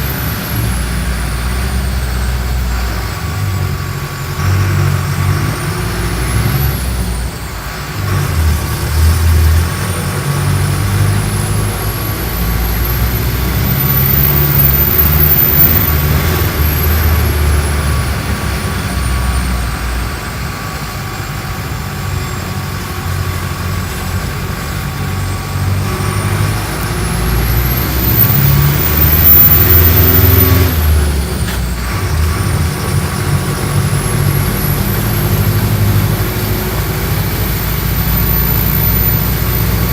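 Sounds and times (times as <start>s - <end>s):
bus diesel engine running: 0.0s - 39.9s
thin high whine: 24.9s - 31.5s.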